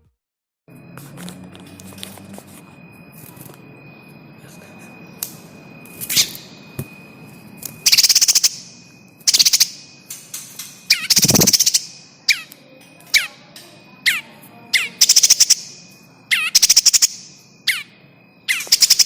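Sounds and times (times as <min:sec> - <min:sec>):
faint steady high tone: 0:00.7 - 0:19.0
bird harsh chattering calls: 0:07.8 - 0:08.7, 0:09.3 - 0:09.8, 0:10.9 - 0:12.5, 0:14.0 - 0:15.7, 0:16.3 - 0:17.9, 0:18.5 - 0:19.0.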